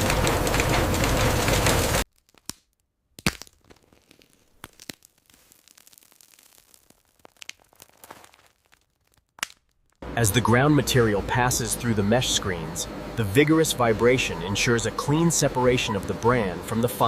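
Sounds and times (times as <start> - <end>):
machinery clatter: 0.0 - 2.0
faint clicks and crackles: 0.0 - 10.0.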